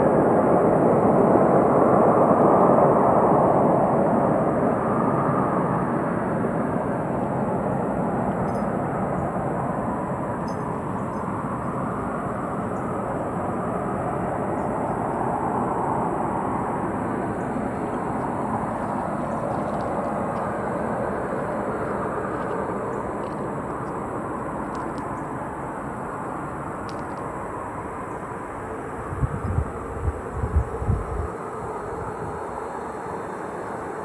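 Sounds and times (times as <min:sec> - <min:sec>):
low rumbling drone from sky: 0:00.0 - 0:34.0.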